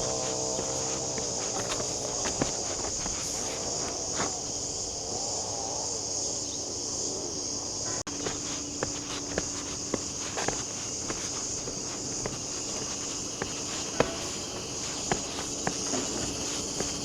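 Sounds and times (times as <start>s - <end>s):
footsteps crunching: 0.0s - 4.4s, 8.1s - 17.0s
insects chirping: 0.0s - 17.0s.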